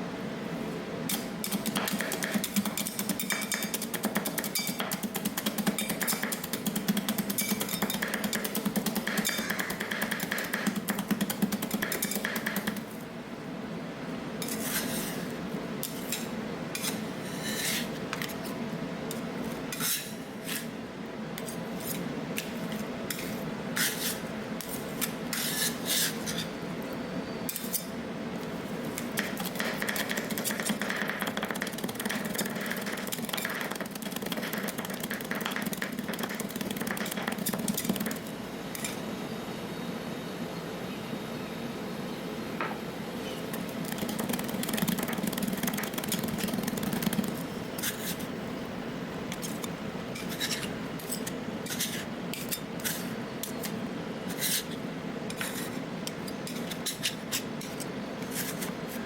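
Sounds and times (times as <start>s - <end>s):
metal spatulas chopping on cold plate: 1.1s - 12.8s, 28.9s - 39.0s.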